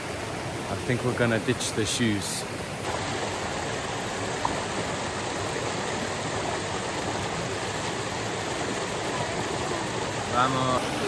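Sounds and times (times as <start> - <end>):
mountain stream rushing: 0.0 - 11.0.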